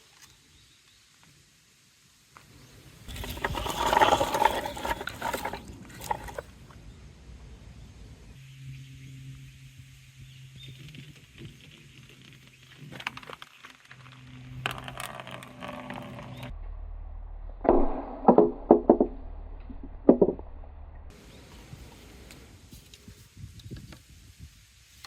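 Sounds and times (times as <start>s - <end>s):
balls rolling through plastic hose: 3.0s - 6.6s, 10.7s - 16.5s
balls knocking on playground equipment: 20.1s - 20.4s.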